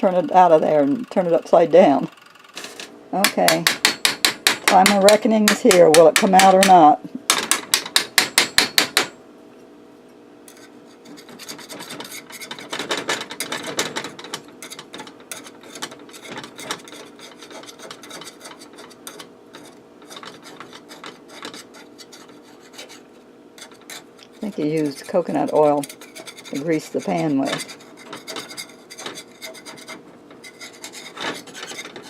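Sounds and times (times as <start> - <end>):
taps on metal cake pan: 3.2 - 9.2
scraping against metal pan: 10.5 - 32.0.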